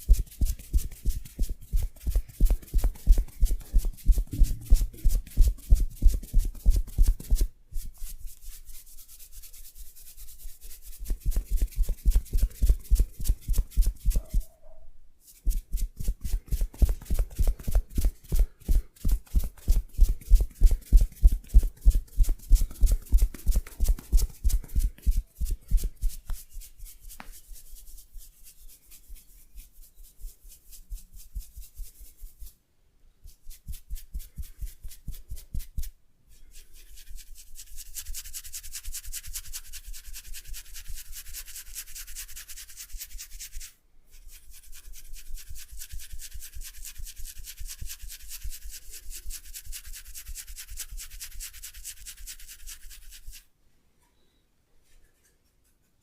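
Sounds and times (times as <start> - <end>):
hands patting head: 0.0 - 8.4, 11.0 - 14.5, 15.3 - 27.6
hands rubbing head: 0.0 - 14.5, 15.2 - 32.6.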